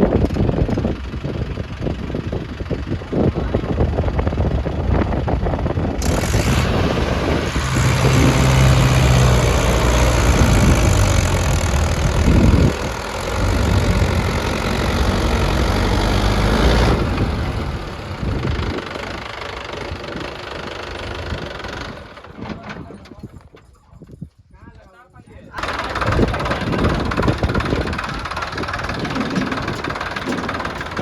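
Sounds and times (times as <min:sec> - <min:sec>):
heavy diesel engine running: 0:00.0 - 0:23.4, 0:25.6 - 0:31.0.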